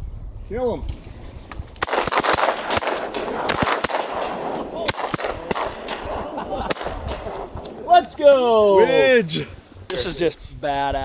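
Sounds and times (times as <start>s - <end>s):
shotgun blasts: 1.8s - 8.1s.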